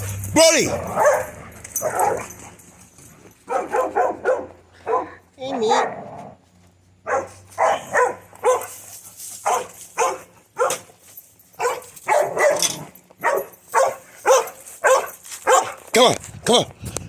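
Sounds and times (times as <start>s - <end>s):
dog barking: 0.6s - 2.4s, 3.5s - 6.0s, 7.0s - 8.8s, 9.4s - 10.9s, 11.6s - 15.8s.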